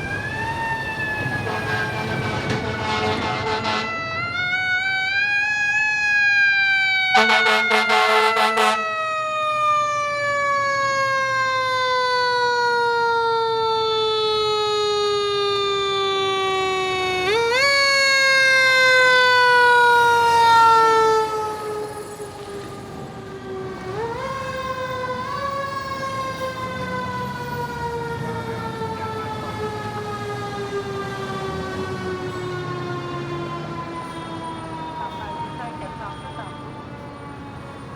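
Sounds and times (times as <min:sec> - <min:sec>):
mechanical siren wailing: 0:00.0 - 0:37.9
horn blast: 0:01.4 - 0:04.2, 0:07.1 - 0:09.0.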